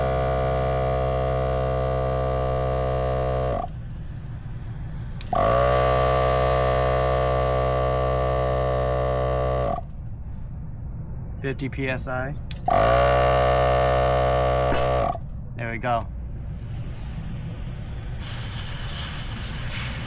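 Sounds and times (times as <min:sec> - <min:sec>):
electric air compressor humming: 0:00.0 - 0:04.1, 0:05.2 - 0:09.9, 0:12.5 - 0:15.2, 0:18.2 - 0:20.0.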